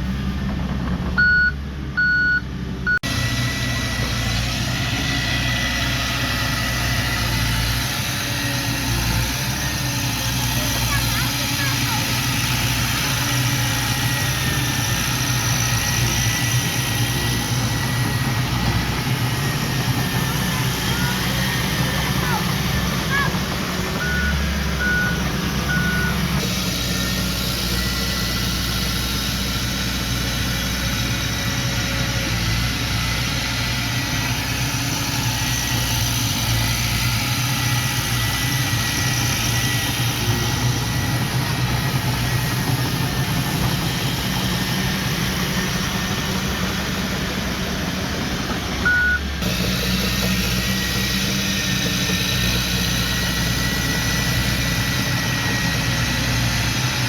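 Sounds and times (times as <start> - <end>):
heavy machine engine running: 0.0 - 57.0
reversing beep: 1.2 - 3.1, 24.0 - 26.2, 48.8 - 49.4.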